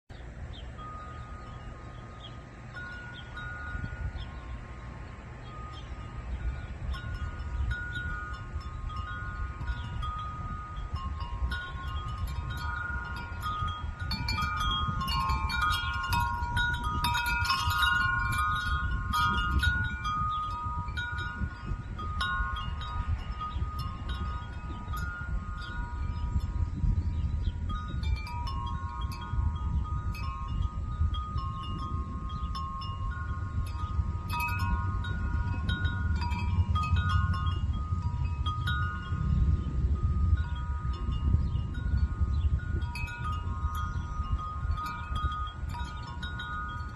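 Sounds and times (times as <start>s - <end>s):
wind chimes ringing: 0.4s - 46.9s.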